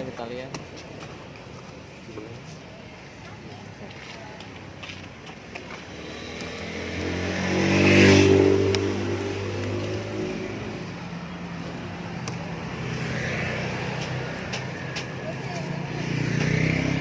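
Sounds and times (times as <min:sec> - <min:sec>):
vehicle engine passing: 0:05.7 - 0:17.0.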